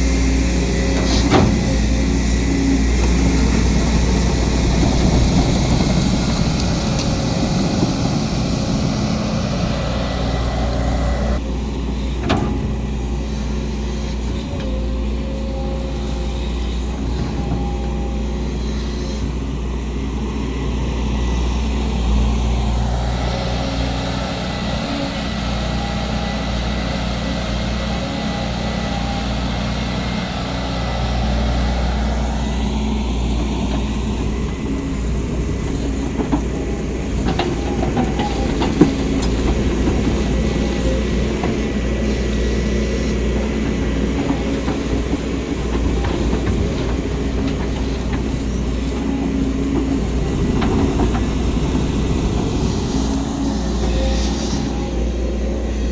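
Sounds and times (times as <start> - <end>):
excavator diesel engine running: 0.0 - 55.9
metal clanks and knocks: 12.2 - 13.0.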